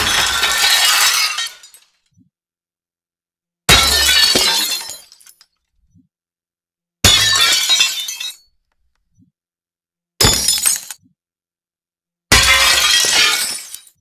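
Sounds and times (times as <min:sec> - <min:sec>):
glass shattering: 0:00.0 - 0:01.8, 0:03.7 - 0:05.4, 0:07.1 - 0:08.4, 0:10.2 - 0:11.0, 0:12.3 - 0:14.0.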